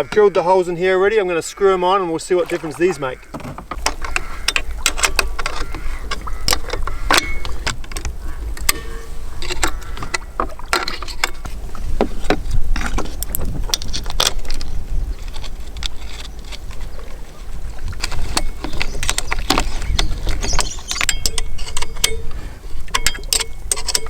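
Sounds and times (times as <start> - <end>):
metal tools clinking: 3.7 - 11.5, 18.0 - 24.0.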